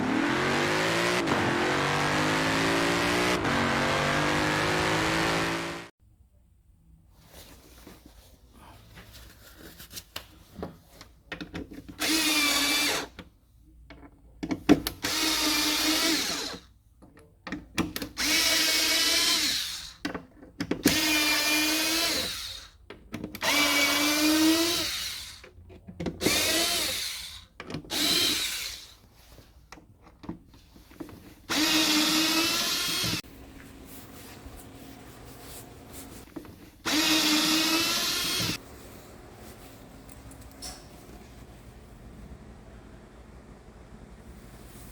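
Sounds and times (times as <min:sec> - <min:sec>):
cordless drill whining: 0:12.0 - 0:13.1, 0:15.0 - 0:16.7, 0:18.1 - 0:20.0, 0:20.9 - 0:22.8, 0:23.4 - 0:25.4, 0:26.2 - 0:29.0, 0:31.5 - 0:33.2, 0:36.8 - 0:38.6.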